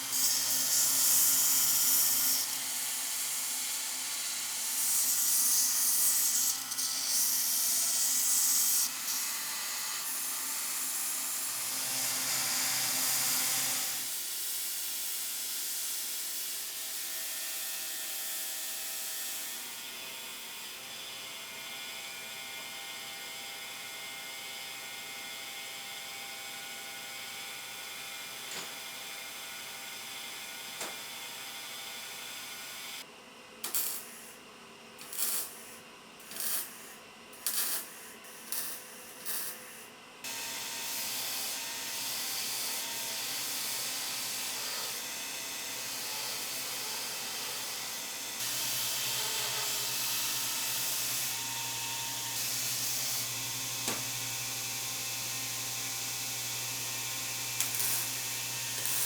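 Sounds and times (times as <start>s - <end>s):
steady workshop hiss: 36.6s - 59.0s.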